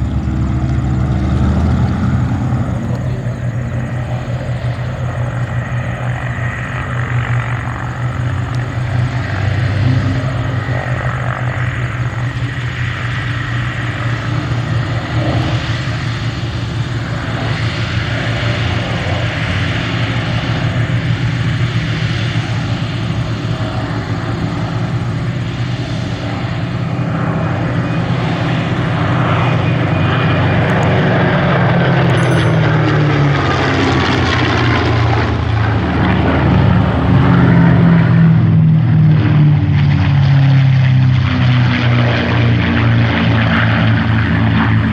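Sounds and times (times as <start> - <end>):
piston aircraft engines running: 0.0 - 44.9.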